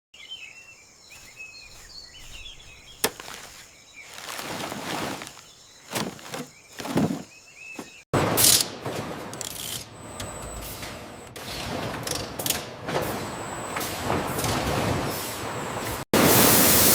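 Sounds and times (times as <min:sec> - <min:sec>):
birds chirping: 0:00.2 - 0:08.1
rustling handling noise: 0:01.1 - 0:08.0.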